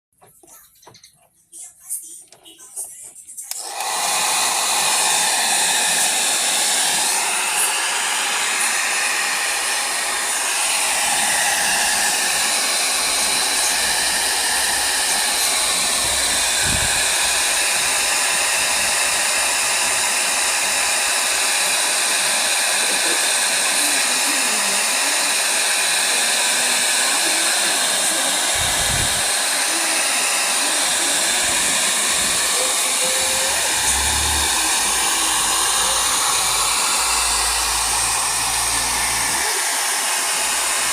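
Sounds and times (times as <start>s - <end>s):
hair dryer blowing: 3.5s - 40.9s.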